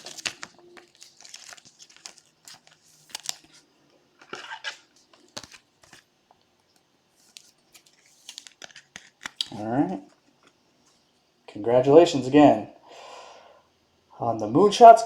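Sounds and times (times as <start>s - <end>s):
foil wrappers crinkling: 0.0s - 6.1s, 7.2s - 9.6s
cards rustling and clicking: 0.0s - 10.6s.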